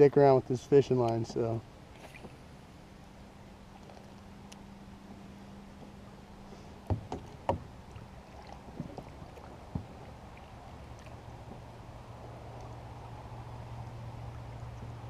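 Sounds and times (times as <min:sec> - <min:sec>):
faint steady hum: 0:00.0 - 0:15.0
sharp knocks: 0:06.9 - 0:07.7.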